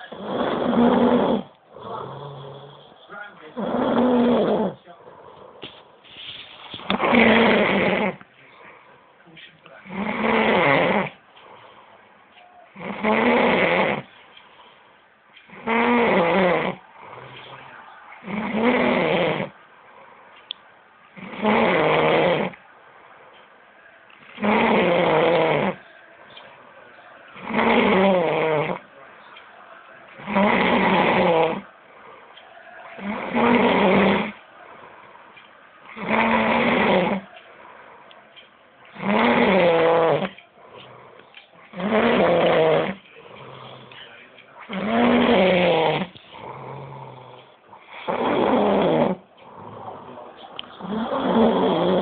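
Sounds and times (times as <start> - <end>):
loud snoring: 0.0 - 5.7, 6.8 - 8.2, 9.8 - 11.8, 12.7 - 14.2, 15.5 - 19.6, 21.2 - 22.7, 24.3 - 26.0, 27.3 - 28.9, 30.2 - 31.8, 32.7 - 35.0, 35.9 - 37.4, 38.9 - 52.0.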